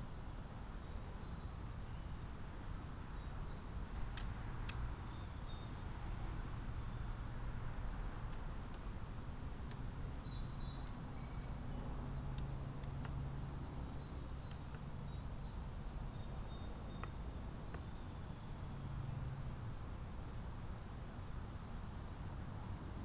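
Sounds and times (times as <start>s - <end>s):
low outdoor rumble: 0.0s - 23.0s
light clicks: 3.9s - 4.9s, 8.2s - 9.9s
faint high chirps: 8.9s - 11.8s, 13.6s - 18.6s.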